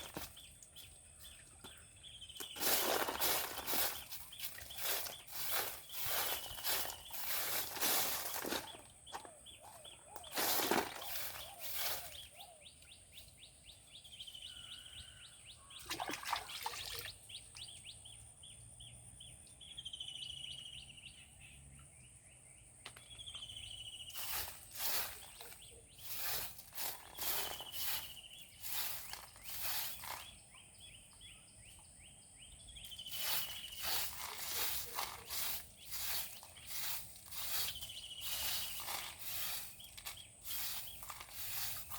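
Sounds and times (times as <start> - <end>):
loud scraping noises: 2.5 - 8.9, 24.1 - 30.4, 33.0 - 41.9
bird whistled call: 9.7 - 12.7.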